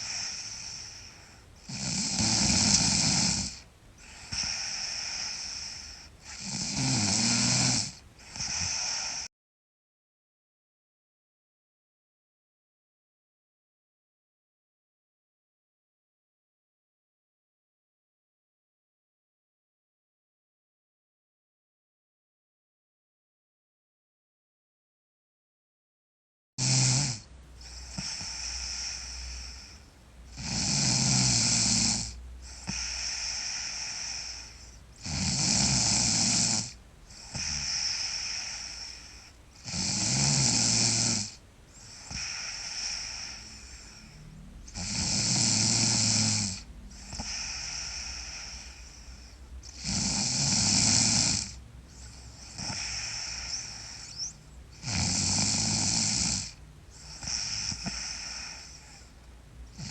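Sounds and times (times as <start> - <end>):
soft breathing: 0.0 - 1.8, 2.6 - 6.8, 7.5 - 9.3, 27.4 - 30.8, 31.6 - 39.8, 41.3 - 45.3, 45.9 - 55.0, 56.4 - 59.9
girl snoring loudly: 0.0 - 9.3, 26.6 - 59.1, 59.7 - 59.9.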